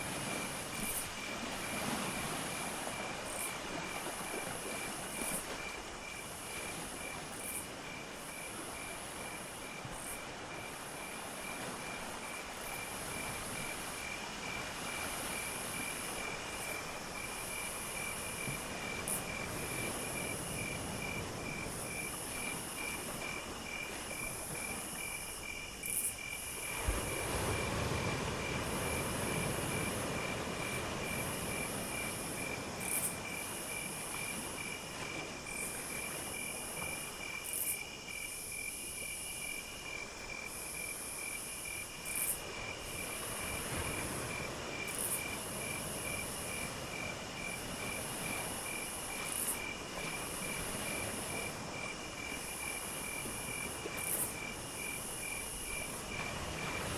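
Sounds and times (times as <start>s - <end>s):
cricket trill: 0.0s - 56.9s.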